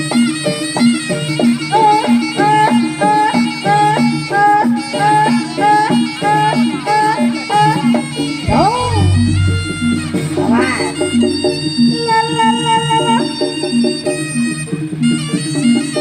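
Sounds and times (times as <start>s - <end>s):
ensemble music with steady beat: 8.4s - 11.6s.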